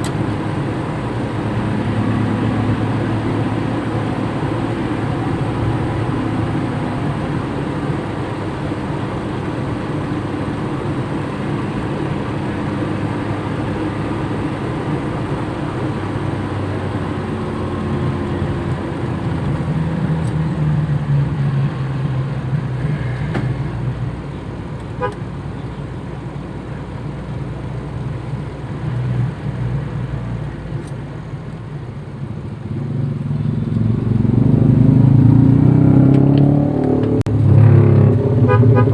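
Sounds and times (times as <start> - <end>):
car engine and road noise: 0.0 - 38.9
car horn toots: 25.0 - 25.7, 37.4 - 38.9.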